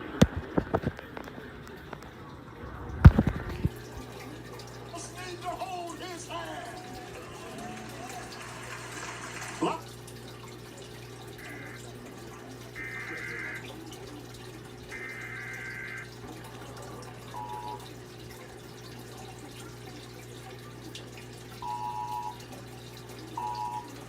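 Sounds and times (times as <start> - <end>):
receiver hiss: 11.4 - 13.9
warbling digital data bursts: 12.8 - 13.6, 14.9 - 16.1
two-tone electronic beeps: 17.3 - 17.8, 21.6 - 22.4, 23.4 - 24.0.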